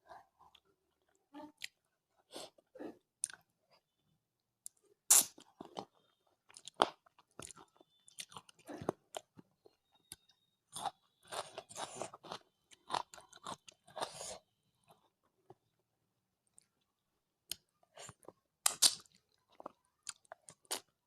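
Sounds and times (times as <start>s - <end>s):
chewing: 4.7s - 15.2s.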